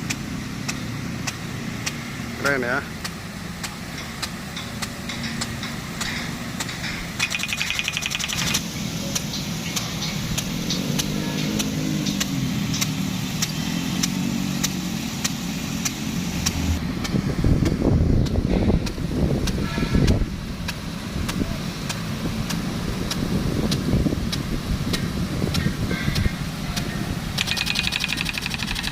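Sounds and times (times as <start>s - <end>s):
engine running with wavering pitch: 0.0s - 28.9s
steady hiss: 0.0s - 28.9s
sharp ticks: 3.0s - 16.6s, 27.4s - 28.9s
rattle of ticks: 4.0s - 16.6s, 25.5s - 28.9s.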